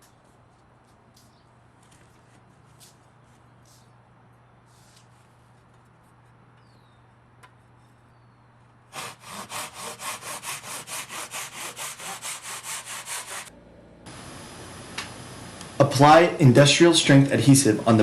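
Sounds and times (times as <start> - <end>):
hand saw cutting wood: 8.9 - 13.5.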